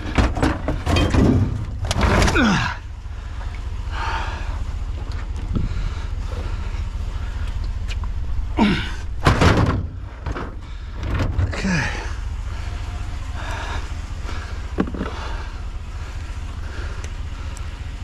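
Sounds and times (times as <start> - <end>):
metal appliance knocks and clunks: 0.0 - 2.4, 9.2 - 11.6
low rumble: 0.0 - 18.0.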